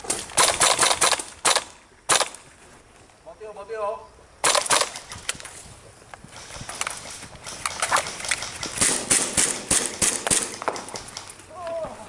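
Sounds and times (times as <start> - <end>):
sharp knocks: 8.0 - 11.3.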